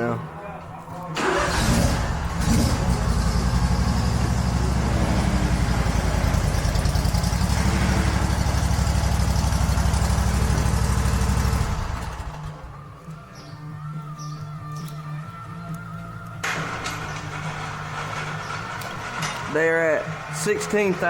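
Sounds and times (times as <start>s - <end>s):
engine running with low pulse: 1.4s - 13.2s.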